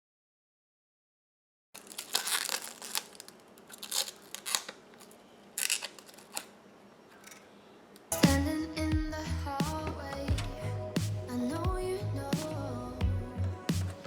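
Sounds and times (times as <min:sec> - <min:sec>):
packaging crinkling and rustling: 0:01.8 - 0:06.6.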